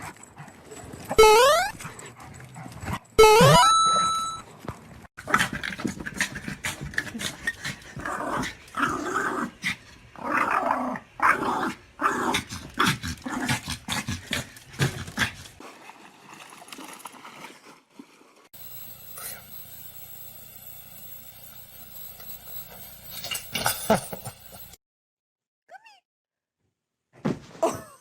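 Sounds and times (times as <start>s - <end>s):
dog growling: 5.2s - 15.5s.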